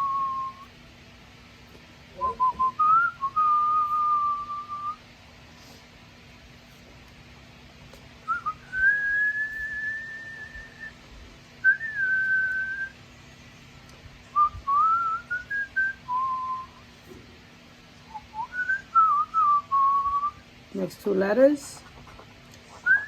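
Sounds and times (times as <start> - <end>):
woman whistling a tune: 0.0 - 0.7, 2.2 - 5.0, 8.3 - 11.0, 11.6 - 12.9, 14.4 - 16.8, 18.1 - 20.4.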